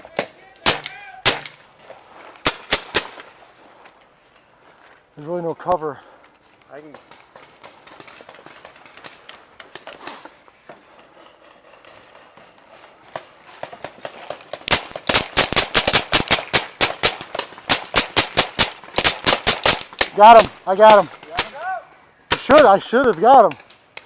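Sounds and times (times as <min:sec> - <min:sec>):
paintball marker firing rapidly: 0:14.6 - 0:21.5.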